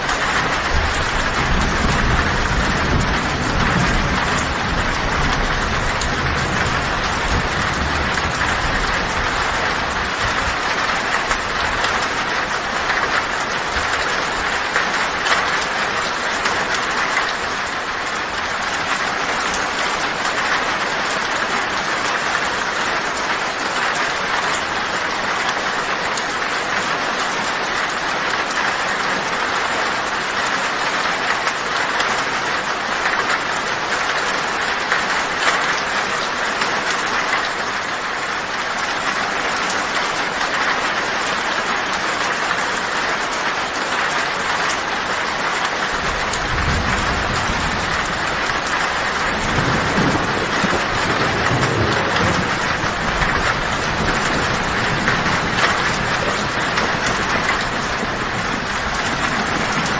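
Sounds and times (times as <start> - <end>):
heavy rain on a tin roof: 0.0 - 59.9.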